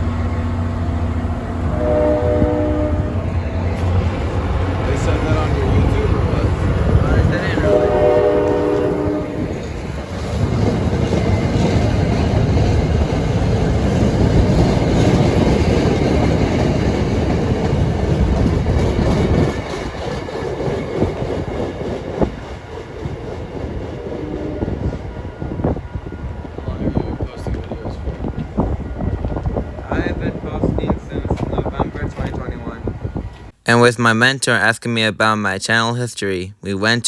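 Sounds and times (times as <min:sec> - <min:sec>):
train horn chord: 0:00.0 - 0:04.0, 0:07.3 - 0:09.7
train rolling on rails: 0:00.0 - 0:33.6.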